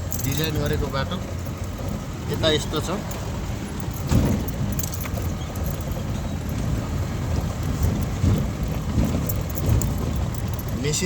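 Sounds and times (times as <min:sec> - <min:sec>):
knocks and rattles from bumps: 0:00.0 - 0:11.0
vehicle driving on dirt road: 0:00.0 - 0:11.0.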